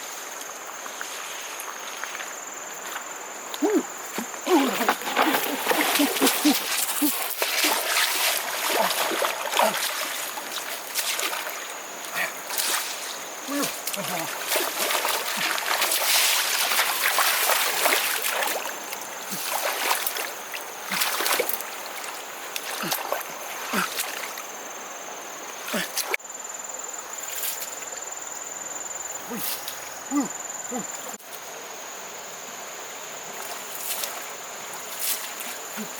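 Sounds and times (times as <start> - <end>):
hands splashing in shallow water: 4.6 - 11.7, 12.5 - 24.4.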